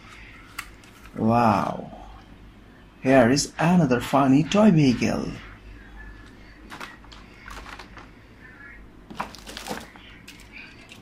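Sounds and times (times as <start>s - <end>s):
plastic toys clicking and rattling: 6.7s - 8.1s.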